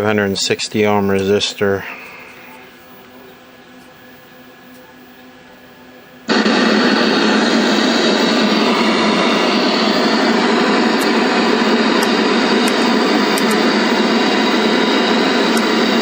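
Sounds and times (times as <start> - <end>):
faint hum: 0.0 - 16.0
television static hiss: 0.0 - 16.0.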